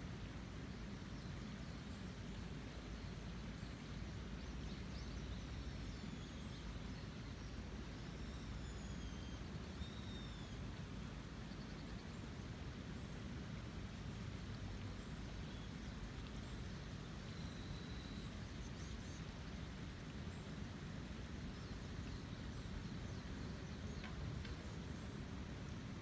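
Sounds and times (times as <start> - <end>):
faint bird whistle: 8.0 - 10.6, 17.2 - 18.4.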